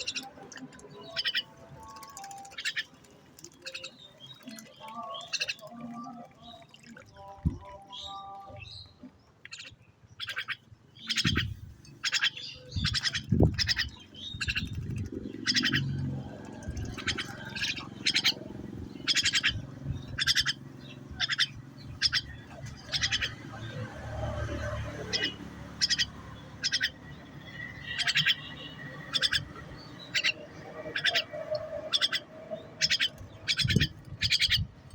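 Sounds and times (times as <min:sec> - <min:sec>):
small bird chirping: 0:09.5 - 0:23.4, 0:25.0 - 0:31.3.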